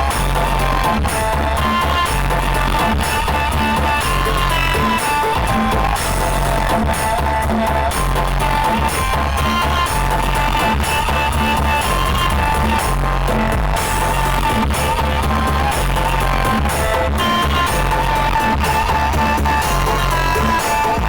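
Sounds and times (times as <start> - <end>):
heavy bass notes: 0.0 - 21.0
loud music through sound system: 0.0 - 21.0.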